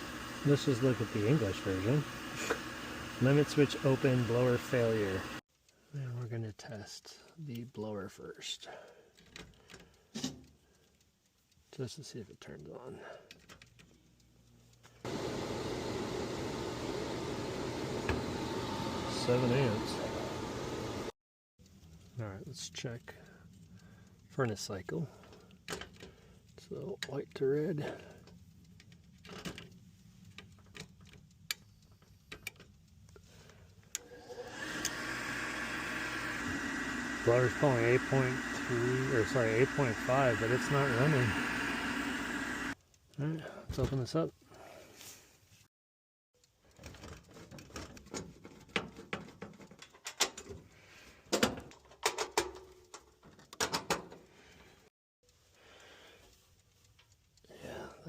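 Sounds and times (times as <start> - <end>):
blower motor humming: 0.0 - 5.4, 15.0 - 21.1, 33.7 - 42.8.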